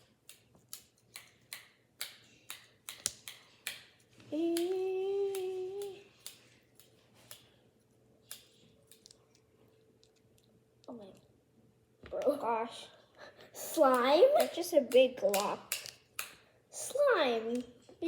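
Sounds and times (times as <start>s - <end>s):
person humming: 4.3s - 6.1s.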